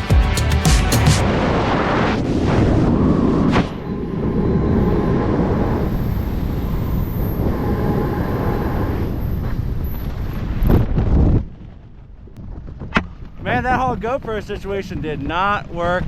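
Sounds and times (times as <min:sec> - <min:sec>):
wind roar on microphone: 0:01.2 - 0:16.0.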